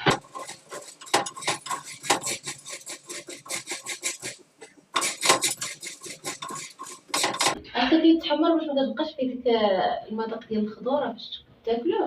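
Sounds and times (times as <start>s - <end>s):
chickpeas rattling in a pan: 0.0s - 7.6s.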